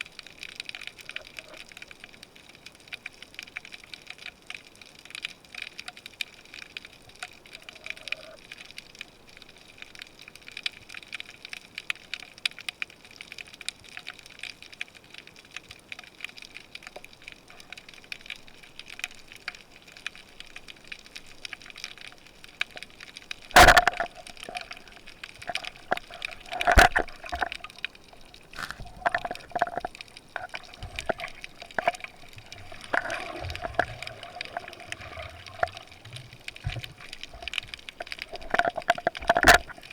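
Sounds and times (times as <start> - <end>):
underwater crackle of tiny clicks: 0.0 - 39.9
underwater knocks: 23.5 - 39.9.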